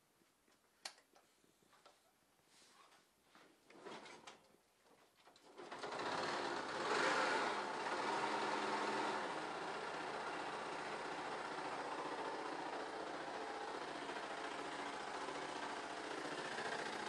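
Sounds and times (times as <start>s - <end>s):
small motorcycle engine running: 5.6s - 17.0s.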